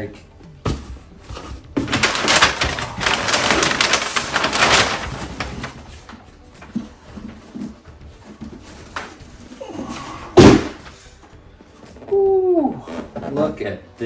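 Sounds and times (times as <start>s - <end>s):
packaging crinkling and rustling: 1.8s - 6.2s.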